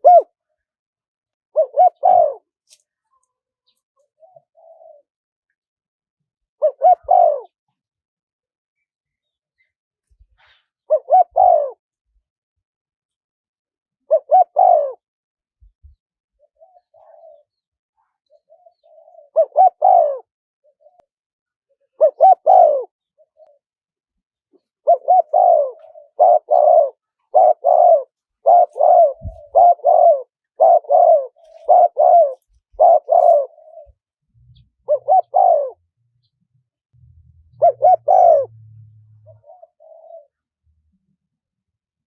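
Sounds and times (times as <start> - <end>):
dove cooing: 0.0 - 0.6, 1.5 - 2.6, 3.7 - 5.1, 6.6 - 7.6, 10.9 - 11.8, 14.0 - 15.0, 16.4 - 21.0, 21.8 - 23.6, 24.5 - 36.0, 37.3 - 40.4.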